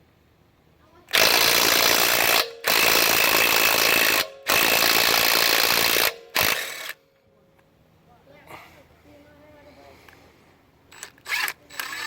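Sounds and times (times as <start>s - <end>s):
impact wrench hammering: 1.1s - 7.0s.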